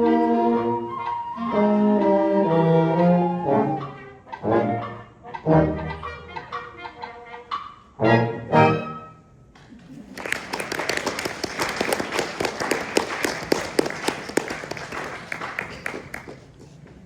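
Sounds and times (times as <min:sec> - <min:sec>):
concert band brass chords: 0:02.4 - 0:09.2
audience applauding: 0:09.6 - 0:17.0.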